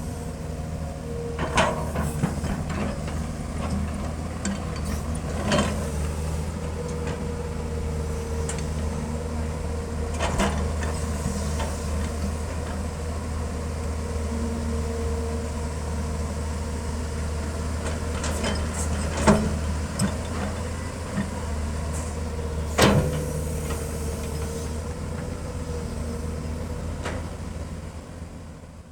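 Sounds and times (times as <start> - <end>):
diesel excavator engine running: 0.0 - 28.9
hydraulic whine: 18.3 - 26.9.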